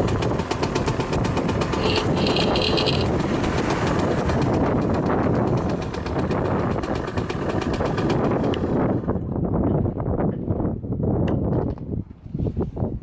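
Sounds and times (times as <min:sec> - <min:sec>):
two-stroke motorcycle engine running: 0:00.0 - 0:09.2
high whine: 0:01.7 - 0:03.2.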